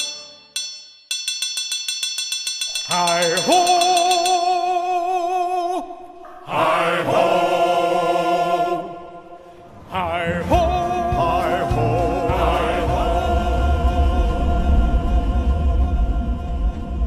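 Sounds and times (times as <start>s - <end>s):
choir holding wordless notes: 6.2s - 17.0s
low rumble: 9.7s - 17.0s.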